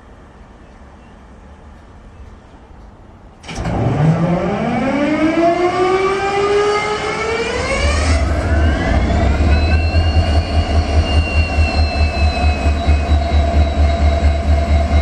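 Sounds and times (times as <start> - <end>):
locomotive engine whine rising: 3.4 - 15.0
deep engine rumble: 7.3 - 15.0.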